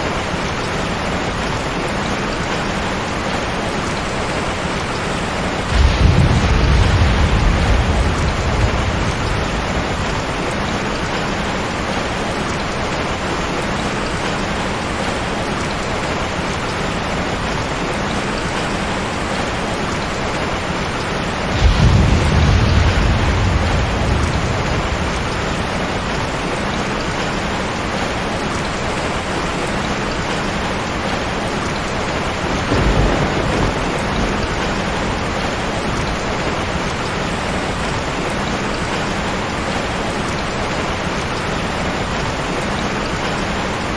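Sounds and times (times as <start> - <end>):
heavy rain falling: 0.0 - 43.9
thunder rumbling: 4.7 - 13.8, 19.1 - 28.6, 30.9 - 40.7.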